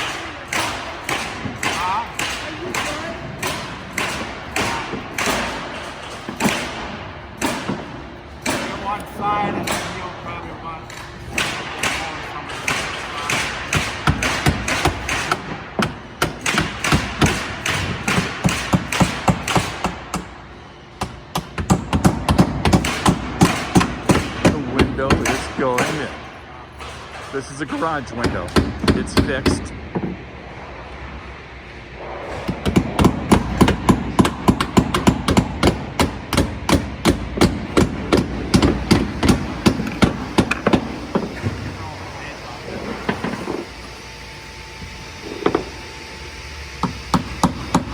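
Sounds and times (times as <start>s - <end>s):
hammer driving nails into wood: 12.6s - 20.3s, 21.0s - 26.1s.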